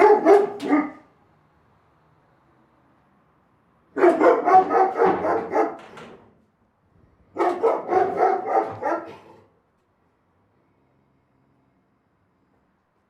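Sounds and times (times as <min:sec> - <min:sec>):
big dog barking: 0:00.0 - 0:01.2, 0:03.9 - 0:06.1, 0:07.3 - 0:09.6.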